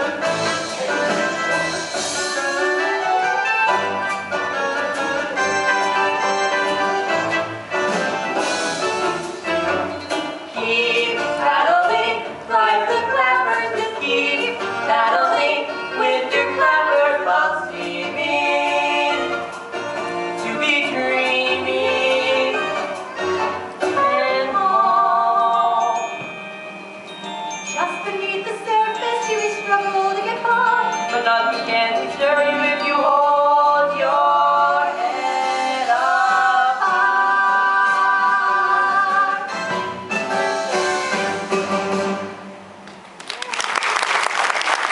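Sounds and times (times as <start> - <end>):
instrumental backing: 0.0 - 43.1
young voices singing together: 10.5 - 19.4, 32.9 - 39.5.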